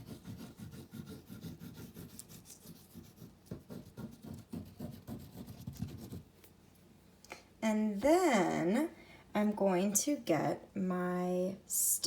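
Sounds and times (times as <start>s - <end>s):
scratching strokes on paper: 0.0s - 6.3s.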